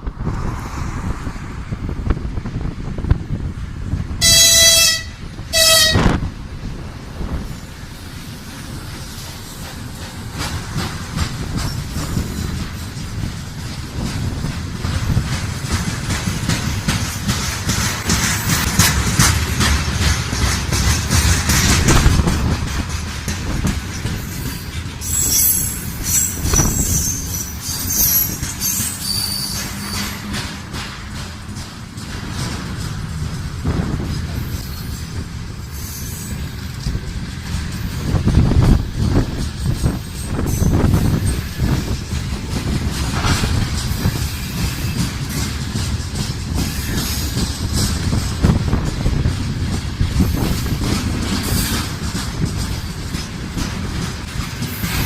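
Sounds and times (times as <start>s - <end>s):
train wheels clattering: 3.8s - 55.0s
high-pitched wheel squeal: 24.2s - 30.3s.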